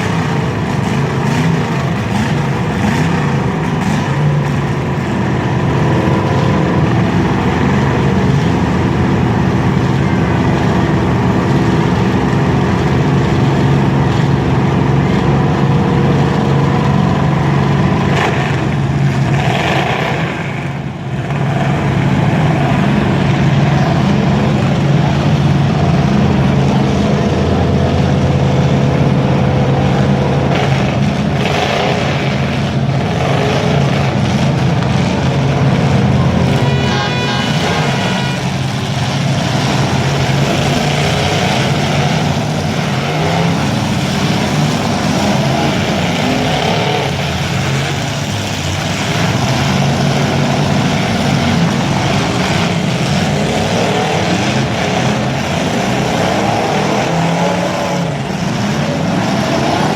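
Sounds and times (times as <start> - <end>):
car engines revving loudly: 0.0 - 59.9.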